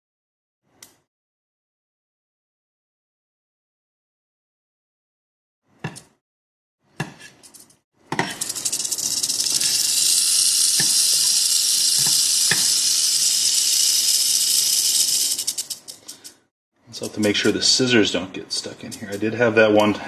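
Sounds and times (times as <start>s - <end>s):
rattlesnake rattling dry buzz: 8.2s - 16.4s
sharp clicks: 8.4s - 16.4s.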